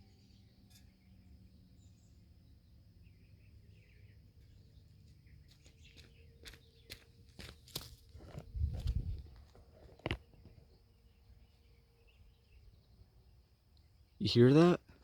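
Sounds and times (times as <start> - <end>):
faint bird chirps: 0.0 - 7.5, 10.1 - 14.8.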